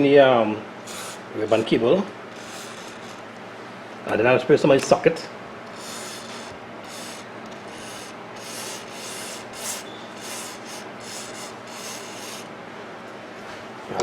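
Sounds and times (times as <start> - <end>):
aerosol spray hissing bursts: 5.8 - 12.5.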